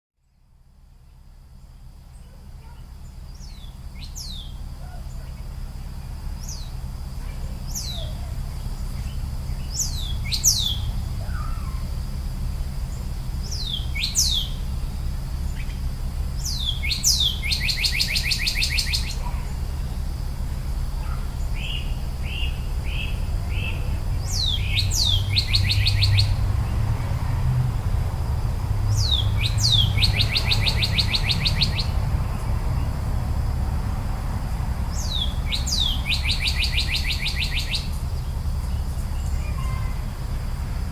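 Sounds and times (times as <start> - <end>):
songbirds chirping: 0.2 - 40.9
steady low rumble: 0.3 - 40.9
bird trilling rapidly: 6.4 - 12.0, 13.4 - 19.7, 20.8 - 26.8, 28.9 - 32.5, 34.9 - 40.1.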